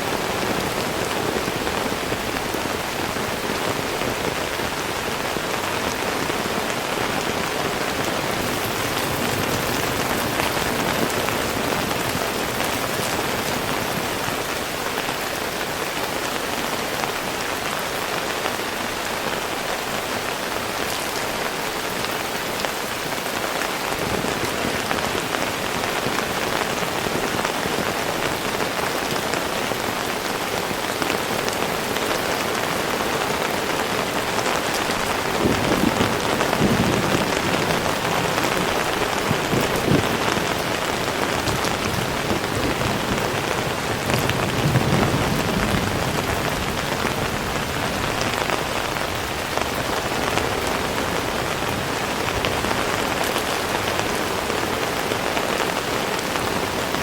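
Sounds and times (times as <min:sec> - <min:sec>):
heavy rain hissing: 0:00.0 - 0:57.0.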